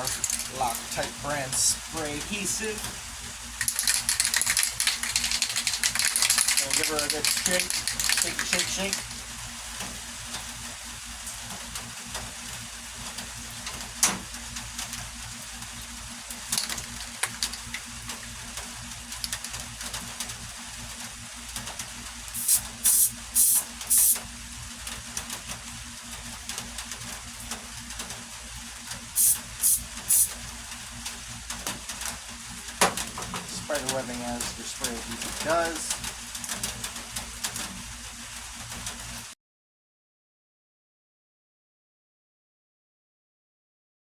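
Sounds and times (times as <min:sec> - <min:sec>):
aerosol can spraying: 0:03.6 - 0:09.1, 0:22.4 - 0:24.2, 0:29.2 - 0:30.4
sharp clicks: 0:03.6 - 0:09.1.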